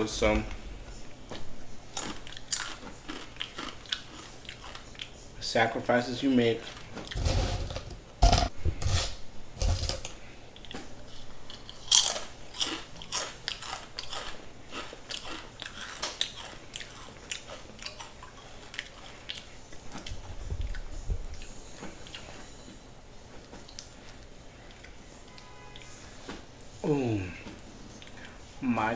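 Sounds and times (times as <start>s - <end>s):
sandwich biting and chewing: 1.3s - 5.2s, 10.6s - 22.6s.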